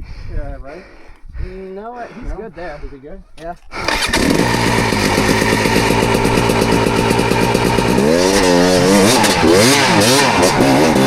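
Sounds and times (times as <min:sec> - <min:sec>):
dirt bike engine idling and revving: 0:02.2 - 0:11.0.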